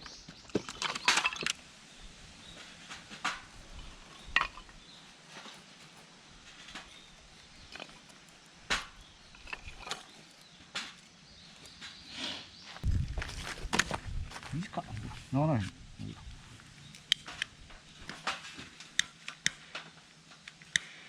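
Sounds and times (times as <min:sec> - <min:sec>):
campfire crackling: 0:12.8 - 0:21.0.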